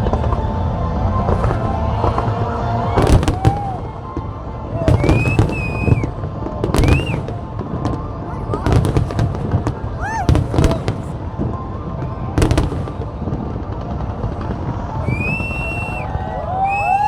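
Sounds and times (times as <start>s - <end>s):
fireworks crackling and rumble: 0.0s - 17.0s
fireworks bangs: 1.3s - 11.5s, 12.4s - 17.0s
fireworks whistles: 4.8s - 6.2s, 6.8s - 7.3s, 15.0s - 17.0s.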